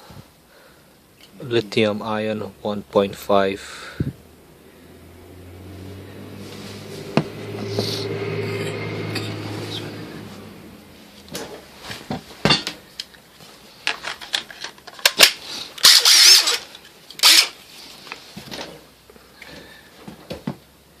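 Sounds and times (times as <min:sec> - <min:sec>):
low hum: 0:02.4 - 0:11.9
plastic tools clicking and clattering: 0:13.8 - 0:17.6.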